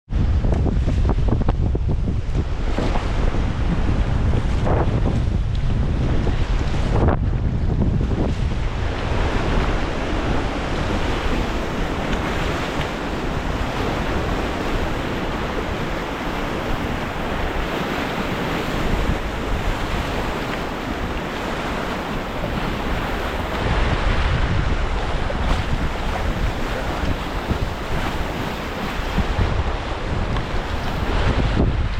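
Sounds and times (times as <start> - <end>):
wind buffeting microphone: 0.1 - 31.9
water rushing through rapids: 8.6 - 31.9.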